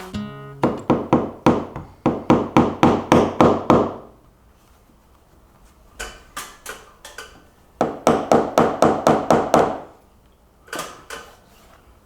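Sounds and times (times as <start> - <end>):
hammer knocking on wood: 0.6 - 4.1, 7.8 - 9.9.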